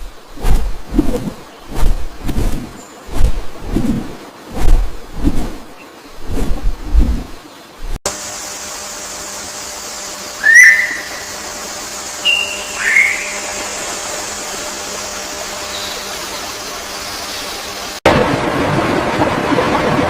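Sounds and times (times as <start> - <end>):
steady high hiss: 7.4 - 18.0
bird whistling: 10.4 - 11.3, 12.2 - 13.4.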